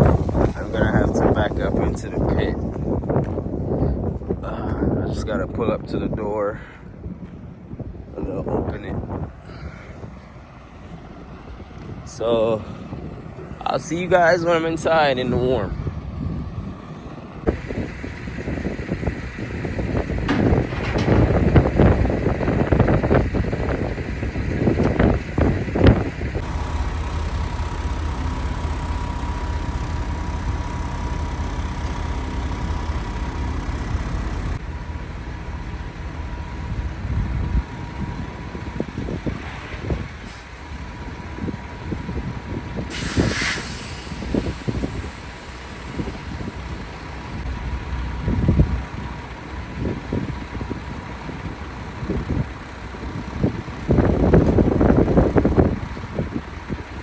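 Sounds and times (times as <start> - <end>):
truck engine rumbling: 0.0 - 57.0
low knocks: 20.0 - 23.4
air hiss: 42.9 - 46.4.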